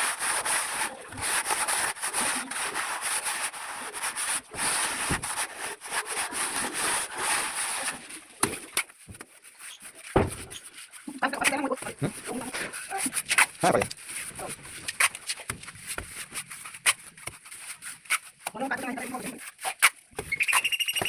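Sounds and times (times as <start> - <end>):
plastering tool scraping wet plaster: 0.0 - 21.0.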